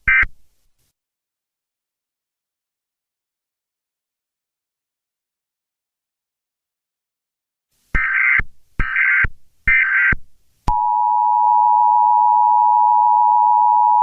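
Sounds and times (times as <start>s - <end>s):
steady two-tone attention signal: 10.7s - 14.0s.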